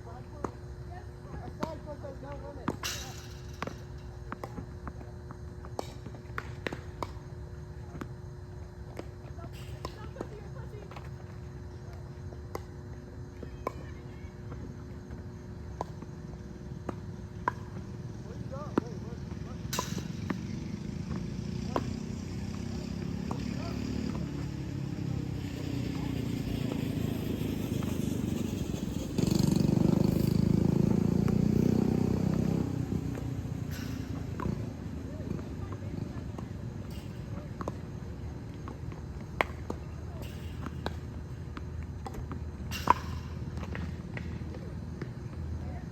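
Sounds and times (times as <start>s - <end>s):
vehicle engine running: 15.5s - 45.5s.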